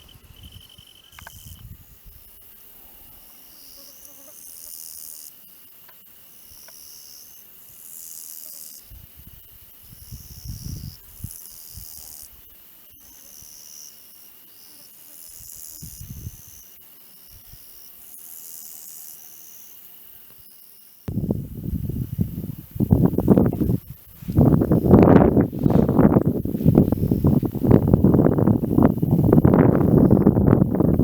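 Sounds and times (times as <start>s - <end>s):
wind on microphone: 0.0s - 2.3s, 8.8s - 12.5s, 15.8s - 16.5s, 21.1s - 31.0s
grasshoppers chirping: 0.0s - 31.0s
high insect trill: 0.0s - 31.0s.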